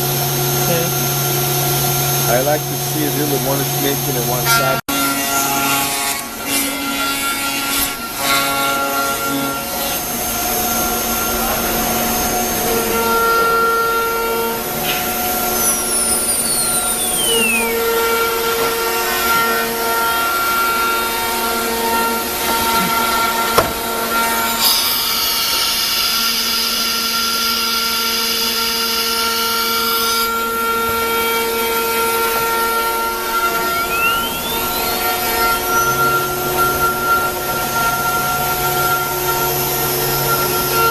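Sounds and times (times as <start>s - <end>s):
machine hum: 0.0s - 40.9s
router spindle whine: 0.0s - 40.9s
sharp knock: 23.6s - 23.9s.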